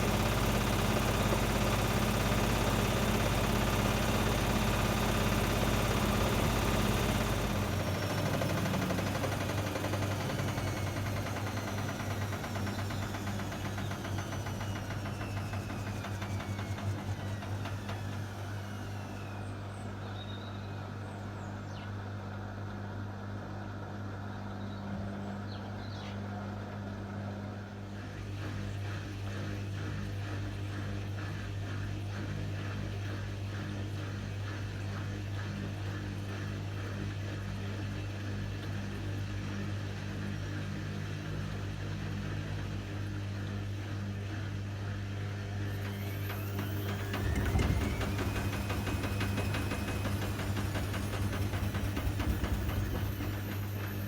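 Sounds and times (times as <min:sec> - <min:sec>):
drum motor whine: 0:00.0 - 0:21.0, 0:44.6 - 0:54.0
washing machine low hum: 0:00.0 - 0:21.7, 0:22.3 - 0:54.0.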